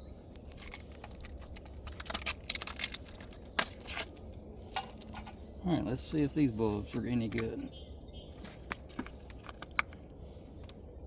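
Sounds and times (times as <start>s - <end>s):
packaging crinkling and rustling: 0.3s - 5.4s, 8.4s - 10.0s.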